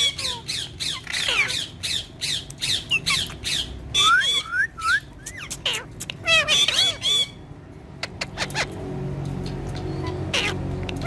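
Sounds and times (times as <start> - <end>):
parakeet shrill calls: 0.0 - 7.5, 8.2 - 8.8, 10.0 - 11.0
parakeet rising whistles: 3.9 - 5.3.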